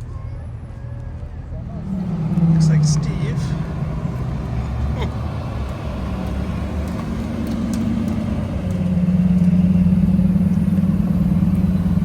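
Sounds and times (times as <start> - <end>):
car engine running: 1.6 - 12.0.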